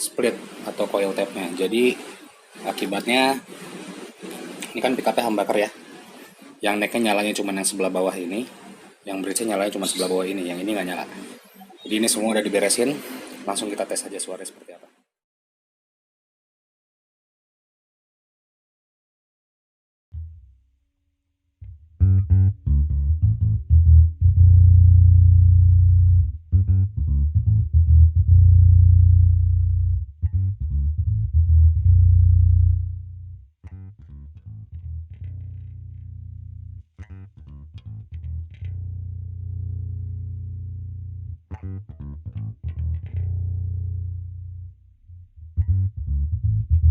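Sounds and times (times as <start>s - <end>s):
electric bass guitar notes: 20.2s - 20.6s, 21.6s - 46.9s.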